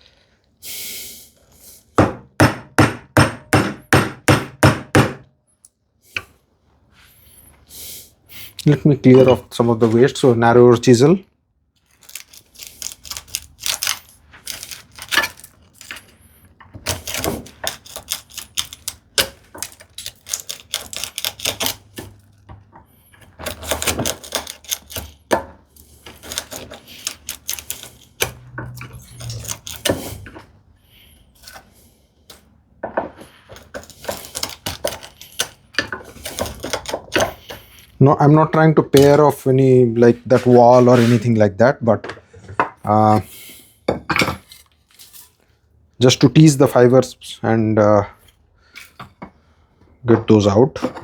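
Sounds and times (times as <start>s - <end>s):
chisel clicking and scraping wood: 12.0s - 22.3s, 23.2s - 30.5s, 32.3s - 37.7s.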